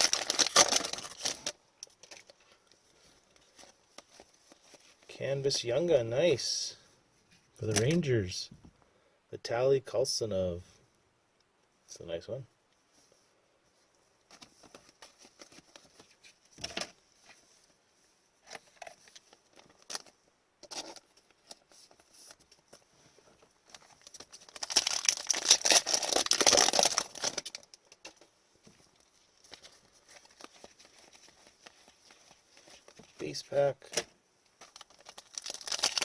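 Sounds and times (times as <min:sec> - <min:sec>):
foil pack crinkling and tearing: 0:00.0 - 0:02.4, 0:23.7 - 0:28.0, 0:34.6 - 0:36.0.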